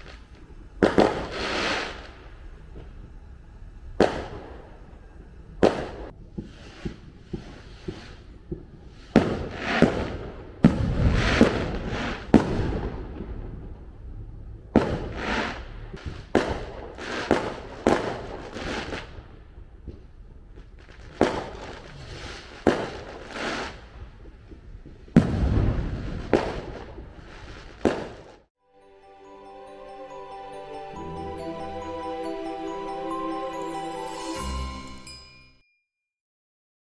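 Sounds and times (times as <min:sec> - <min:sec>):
fireworks banging and crackling: 0:00.0 - 0:28.5.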